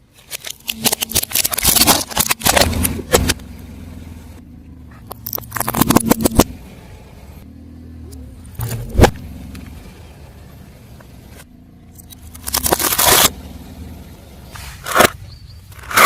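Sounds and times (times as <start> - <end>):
tyre crushing brittle objects: 0.0 - 3.4, 5.1 - 6.5, 12.1 - 13.4, 14.6 - 16.0
car engine running low: 0.0 - 16.0
sharp crack: 12.1 - 13.4.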